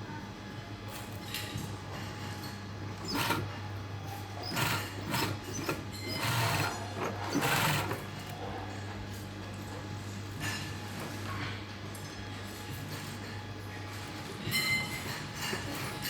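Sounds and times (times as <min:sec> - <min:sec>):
sewing machine stitching: 0:03.0 - 0:03.5, 0:04.4 - 0:08.1.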